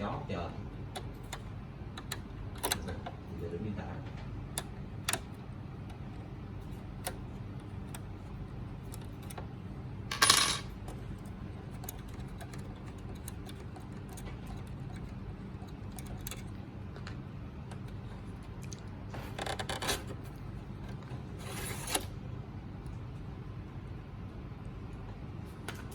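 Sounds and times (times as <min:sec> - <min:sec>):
steady low hum: 0:00.0 - 0:25.9
metal parts clinking and rattling: 0:10.1 - 0:10.7.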